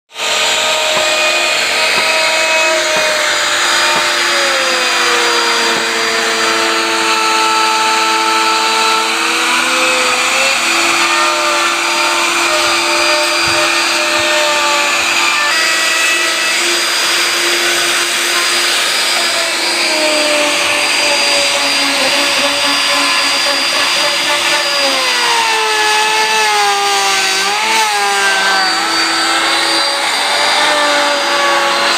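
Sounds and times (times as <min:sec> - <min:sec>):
power tool motor whine: 0:00.2 - 0:31.9.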